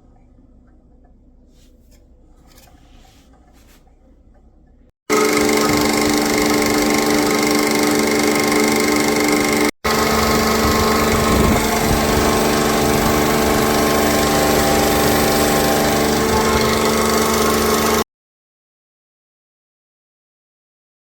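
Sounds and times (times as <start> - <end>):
vacuum pump humming: 5.1 - 18.0.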